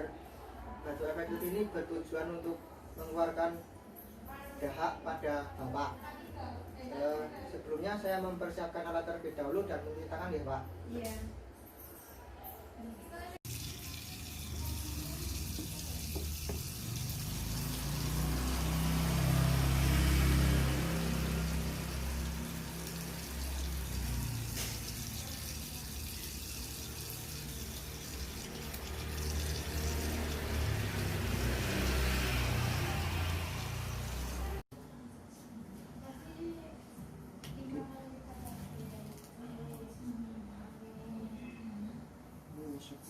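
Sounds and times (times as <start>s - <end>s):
tap water running into sink: 13.4s - 19.1s, 21.2s - 34.6s.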